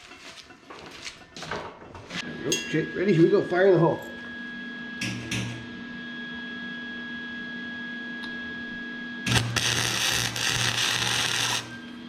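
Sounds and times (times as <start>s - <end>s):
welding arc crackling: 9.3s - 12.0s.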